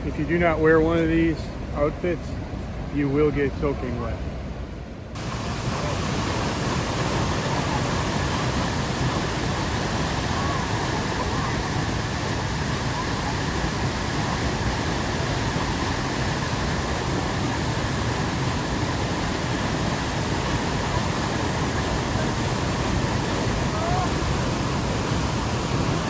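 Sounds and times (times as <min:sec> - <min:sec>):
waterfall rushing: 0:05.2 - 0:26.0.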